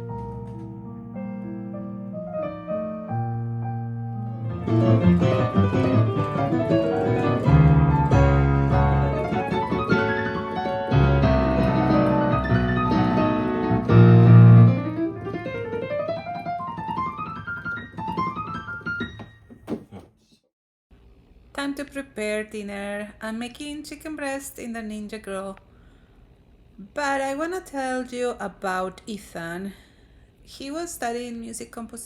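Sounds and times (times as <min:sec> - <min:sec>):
solo piano playing: 0:00.0 - 0:19.4.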